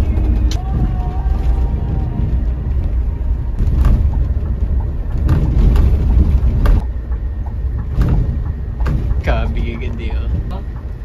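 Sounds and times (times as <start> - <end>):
bus engine and road rumble: 0.0 - 11.0
sharp knocks and rattles: 3.6 - 11.0.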